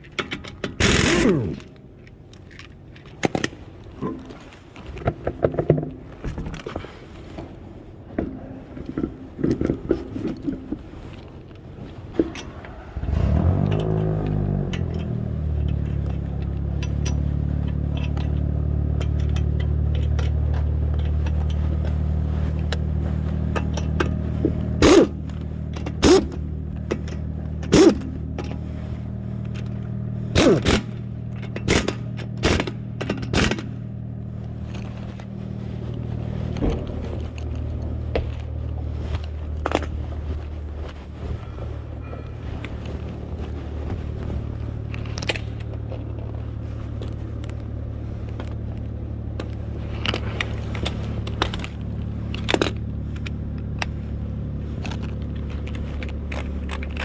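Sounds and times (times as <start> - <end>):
motor humming: 0.8 - 1.9, 17.8 - 48.8.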